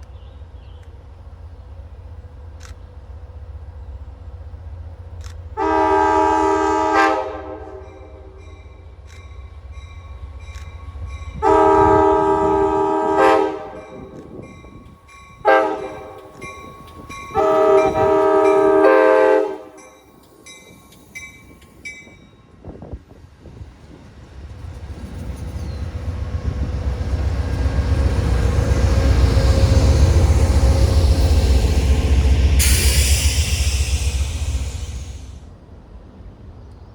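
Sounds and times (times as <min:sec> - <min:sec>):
train rumbling: 0:00.0 - 0:36.9
train horn blasts: 0:05.6 - 0:08.6, 0:11.4 - 0:14.2, 0:15.4 - 0:16.5, 0:17.3 - 0:20.0.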